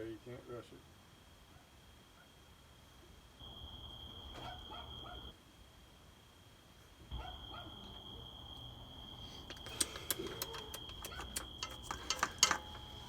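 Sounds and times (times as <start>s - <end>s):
light clicks and taps: 9.4s - 12.9s.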